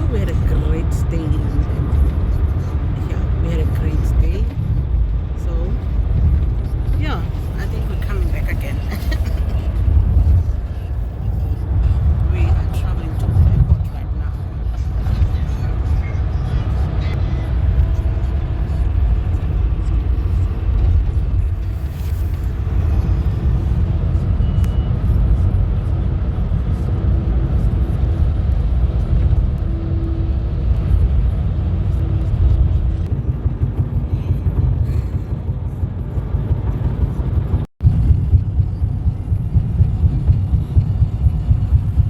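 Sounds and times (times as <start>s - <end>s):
car road noise from cabin: 0.0s - 33.6s.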